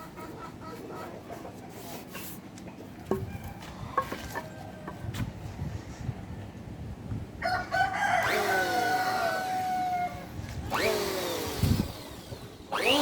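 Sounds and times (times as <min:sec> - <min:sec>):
roosters crowing: 0:07.4 - 0:10.9.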